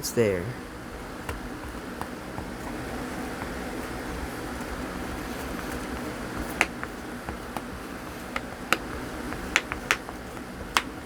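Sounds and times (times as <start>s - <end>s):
steady low hum: 0.0s - 11.0s
small plastic clicks and taps: 10.7s - 11.0s.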